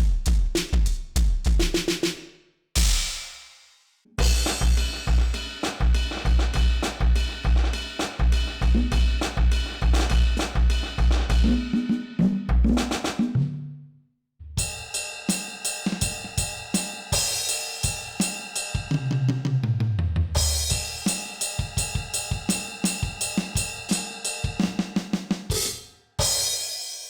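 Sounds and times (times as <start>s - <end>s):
electronic drum beat: 0.0s - 2.2s, 2.8s - 3.3s, 4.2s - 13.4s, 14.6s - 19.5s, 20.3s - 26.6s
cymbal crash: 4.2s - 8.1s, 20.4s - 24.8s.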